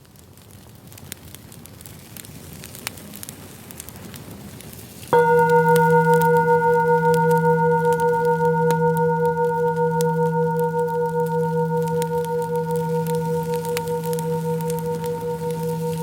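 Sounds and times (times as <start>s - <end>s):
campfire crackling: 0.5s - 16.0s
singing bowl ringing: 5.2s - 16.0s.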